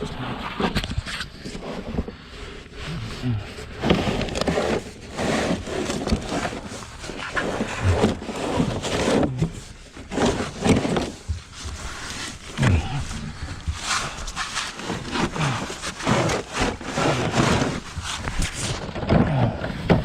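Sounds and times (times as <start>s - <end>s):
scraping rustling shuffles: 0.2s - 19.0s
grunting breaths: 12.0s - 18.2s.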